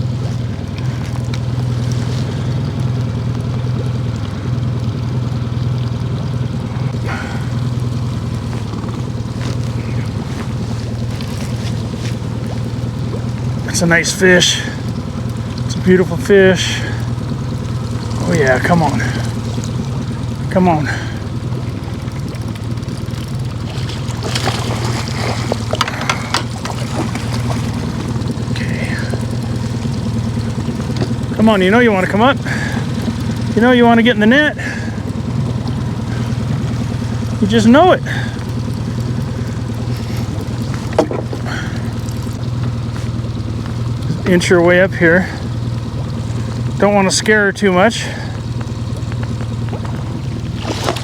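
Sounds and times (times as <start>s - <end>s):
boat motor humming: 0.0s - 51.0s
river water: 0.0s - 51.0s
rain hiss: 27.2s - 46.8s.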